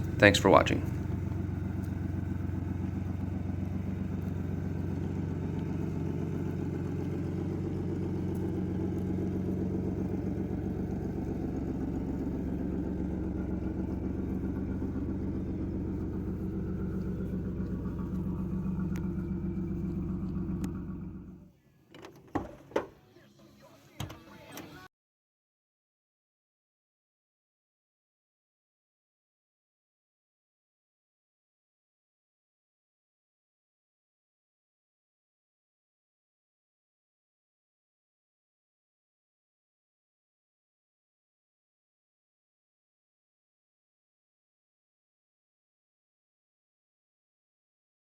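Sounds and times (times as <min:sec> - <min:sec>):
car engine idling: 0:00.0 - 0:21.6.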